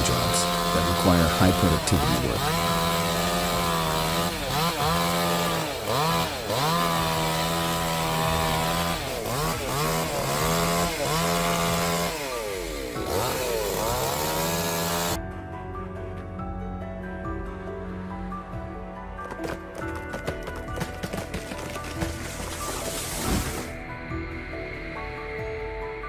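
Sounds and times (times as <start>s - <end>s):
chainsaw cutting log: 0.0s - 15.2s, 19.2s - 23.8s
background music: 0.0s - 26.0s.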